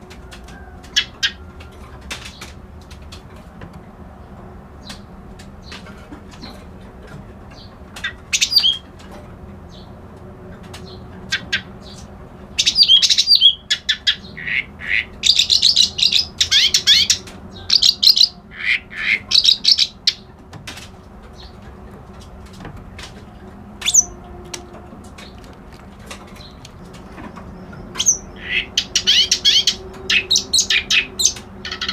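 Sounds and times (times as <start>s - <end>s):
reed warbler singing: 7.5s - 8.9s, 10.8s - 20.4s, 21.3s - 22.2s, 23.0s - 31.9s.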